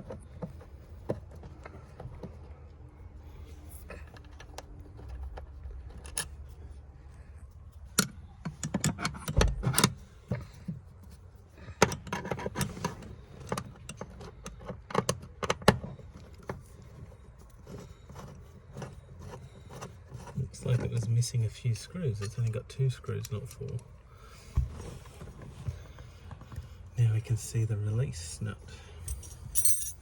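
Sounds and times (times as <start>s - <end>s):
hand tools and screws clinking: 21.9s - 23.9s, 29.0s - 30.0s.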